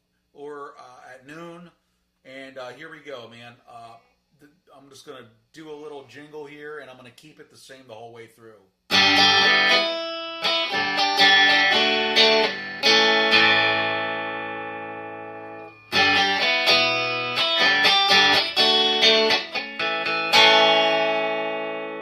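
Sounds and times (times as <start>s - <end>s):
clean electric guitar: 8.9s - 22.0s.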